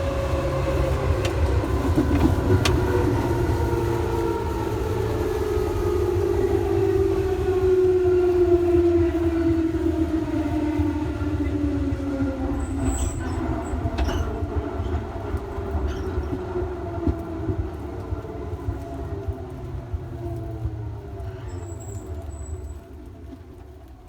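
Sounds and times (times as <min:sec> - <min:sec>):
train motors whining: 0:00.0 - 0:07.6
train car rumble: 0:00.0 - 0:24.0.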